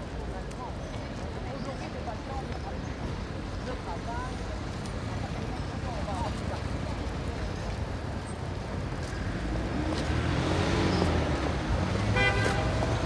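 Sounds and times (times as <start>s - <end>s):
vehicle passing: 9.3s - 13.0s.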